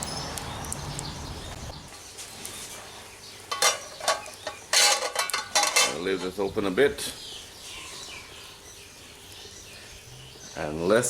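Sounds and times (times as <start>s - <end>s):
metallic clinks against a pot: 3.5s - 6.1s.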